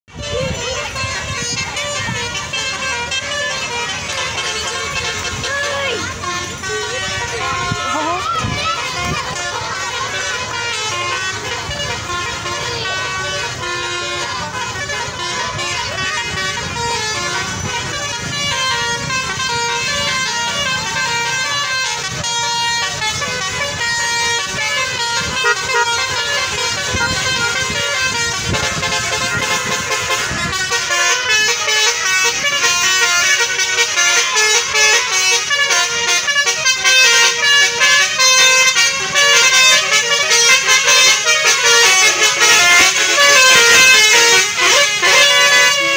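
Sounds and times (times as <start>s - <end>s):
bus engine running: 0.0s - 45.9s
multi-tone musical air horn: 0.1s - 45.9s.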